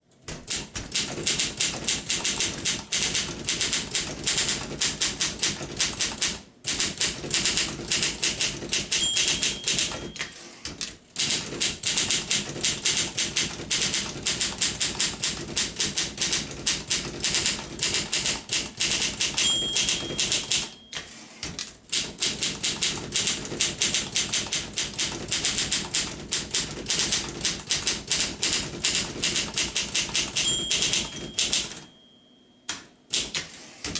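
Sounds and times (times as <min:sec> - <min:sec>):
manual typewriter clatter: 0:00.1 - 0:31.9, 0:32.7 - 0:33.9
typewriter bell ringing: 0:08.2 - 0:10.6, 0:17.2 - 0:21.4, 0:29.6 - 0:32.6.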